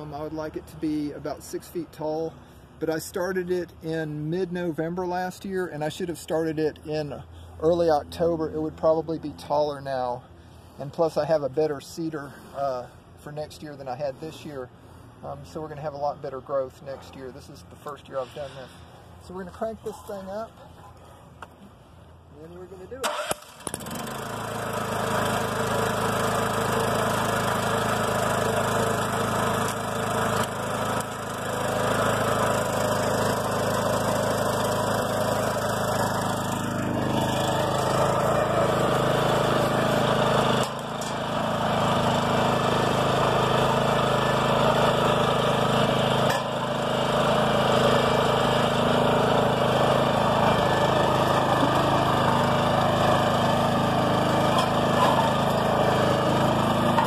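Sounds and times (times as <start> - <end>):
tractor engine running: 23.0 - 57.0.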